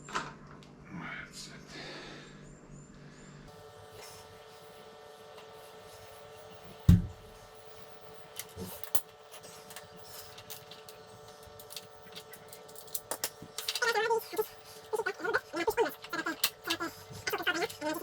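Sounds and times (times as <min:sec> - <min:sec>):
electrical hum: 0:00.0 - 0:18.0
heavy thump: 0:06.9 - 0:07.3.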